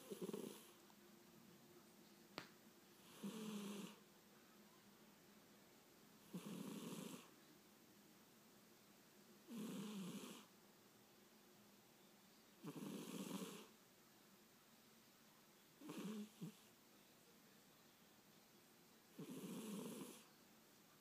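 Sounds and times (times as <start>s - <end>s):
cat snoring: 0.0s - 0.8s, 3.0s - 4.0s, 6.2s - 7.3s, 9.5s - 10.5s, 12.6s - 13.7s, 15.8s - 16.7s, 19.1s - 20.3s.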